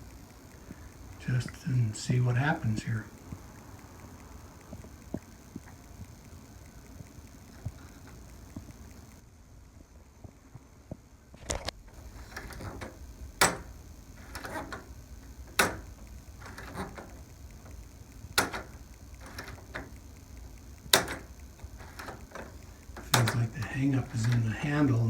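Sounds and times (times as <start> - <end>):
door knob rattling: 11.9 - 24.5
door latch clicking: 11.9 - 24.5.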